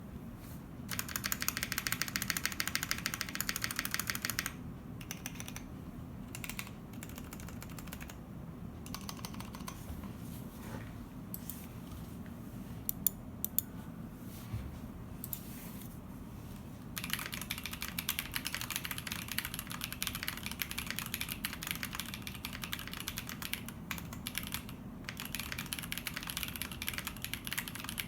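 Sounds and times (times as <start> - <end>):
mechanical keyboard typing: 0.9 - 5.7, 6.3 - 8.2, 8.8 - 9.8, 17.0 - 28.0.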